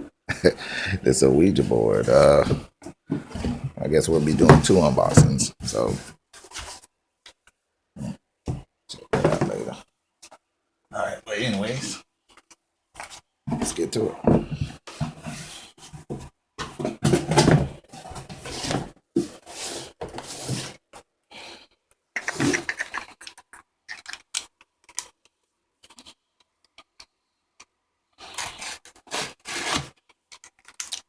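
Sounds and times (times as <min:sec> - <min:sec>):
cardboard box scraping and rubbing: 0:16.8 - 0:20.8, 0:28.3 - 0:30.0.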